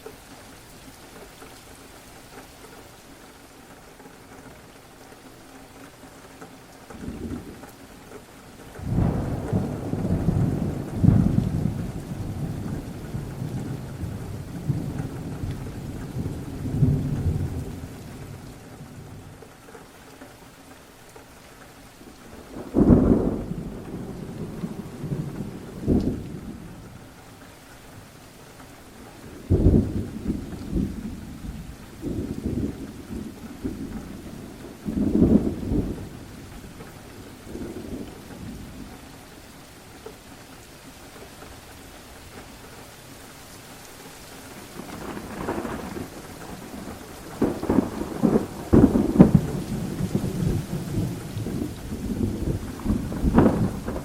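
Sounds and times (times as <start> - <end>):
steady rain: 0.0 - 54.0
thunder rolling: 8.8 - 19.0, 22.4 - 27.0, 29.4 - 38.9, 44.7 - 54.0.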